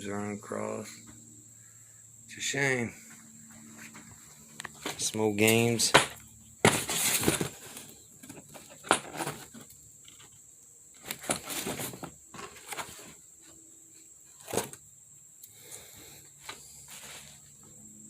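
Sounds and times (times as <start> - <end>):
faint high-pitched whine: 0.0 - 18.0
knocks and shuffles: 3.0 - 9.7, 11.0 - 13.6.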